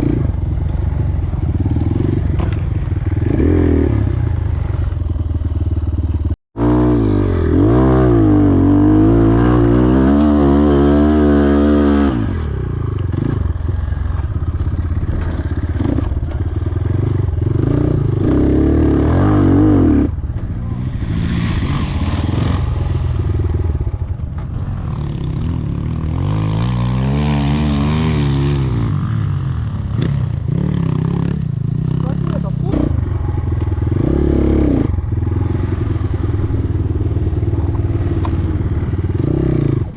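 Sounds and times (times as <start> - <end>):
clatter and scraping over rough ground: 0.0 - 3.4, 4.1 - 6.2, 12.9 - 17.1, 20.0 - 27.3, 34.9 - 39.9
motorcycle engine revving: 0.0 - 39.9.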